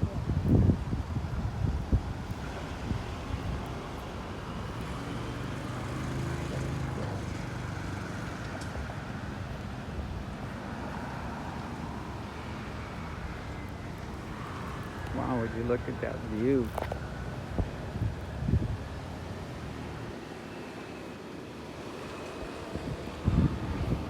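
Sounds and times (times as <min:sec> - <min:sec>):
road traffic noise: 0:00.0 - 0:24.0
vehicle engine passing by: 0:04.8 - 0:08.8.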